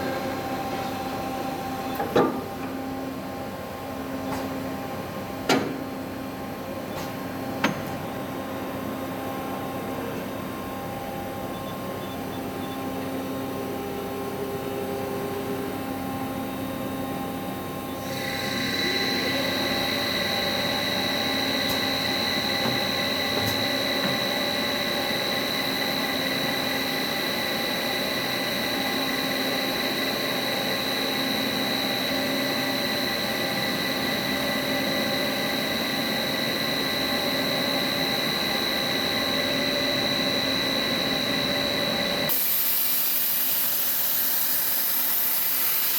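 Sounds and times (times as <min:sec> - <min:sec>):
milling machine humming: 0:15.6 - 0:45.9
high-pitched whine: 0:17.7 - 0:42.4.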